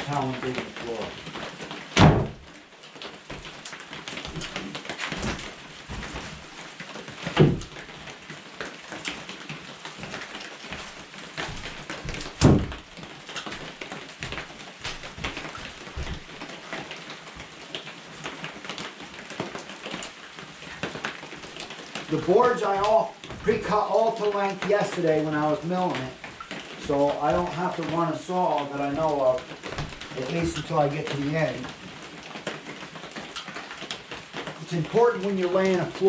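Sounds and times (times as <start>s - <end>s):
heavy rain falling: 0.0s - 36.0s
loud thumps: 2.0s - 2.5s, 4.3s - 6.4s, 7.3s - 7.8s, 11.4s - 12.9s.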